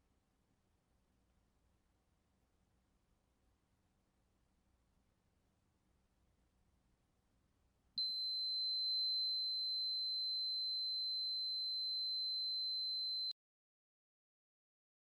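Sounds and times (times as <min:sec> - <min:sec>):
electronic buzzer tone: 0:08.0 - 0:13.3.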